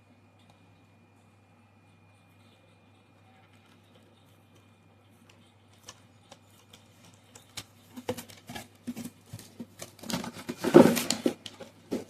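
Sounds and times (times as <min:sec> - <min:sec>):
cardboard and plastic crinkling: 0:06.6 - 0:12.0.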